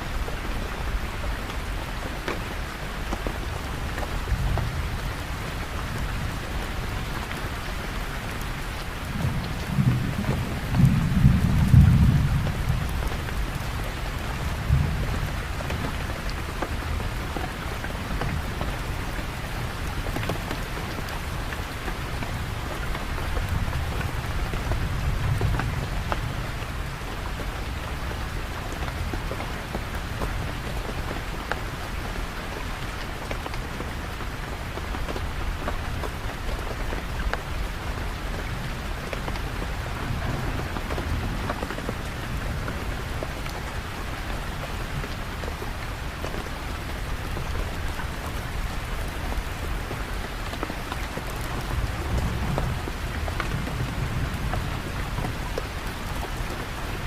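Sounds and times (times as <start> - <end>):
steady rain falling: 0.0 - 57.0
thunder rumbling: 9.0 - 13.8, 39.6 - 43.5.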